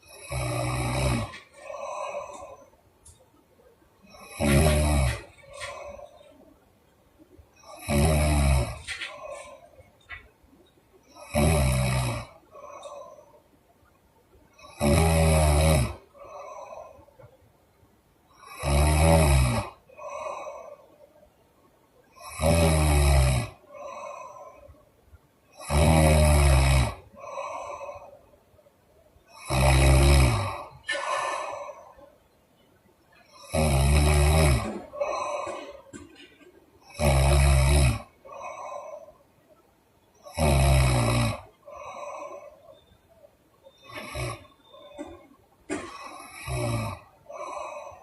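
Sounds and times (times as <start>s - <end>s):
woman snoring loudly: 0.0s - 2.6s, 4.1s - 5.9s, 7.6s - 9.5s, 11.1s - 13.2s, 14.6s - 16.9s, 18.4s - 20.6s, 22.2s - 24.1s, 25.6s - 28.0s, 29.4s - 31.8s, 33.4s - 35.8s, 36.9s - 39.1s, 40.2s - 42.5s, 43.8s - 48.0s.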